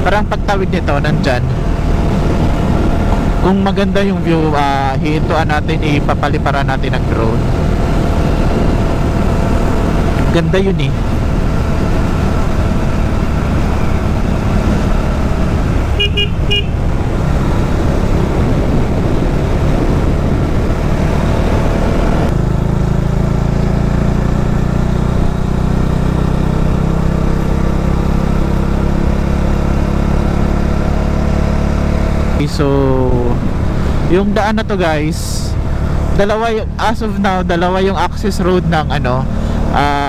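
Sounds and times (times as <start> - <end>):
wind rush: 0.0 - 6.4, 7.0 - 22.4
motorcycle engine running: 0.0 - 40.0
short horn beeps: 15.9 - 16.8.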